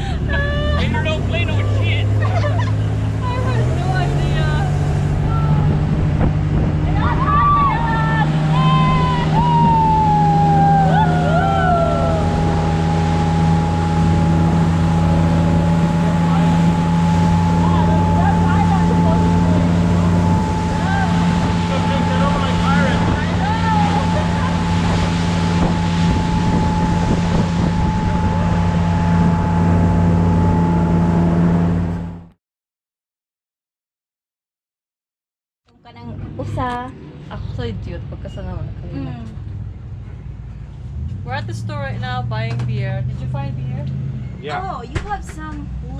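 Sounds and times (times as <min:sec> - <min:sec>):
wind buffeting microphone: 0:00.0 - 0:32.1
vehicle engine droning: 0:00.0 - 0:32.4, 0:35.7 - 0:45.9
faint wavering tones: 0:07.0 - 0:31.0.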